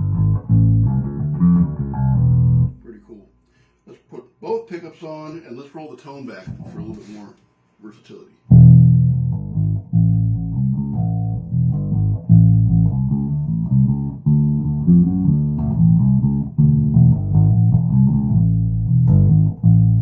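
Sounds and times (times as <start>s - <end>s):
electric bass plucked notes: 0.0s - 2.8s, 8.5s - 20.0s.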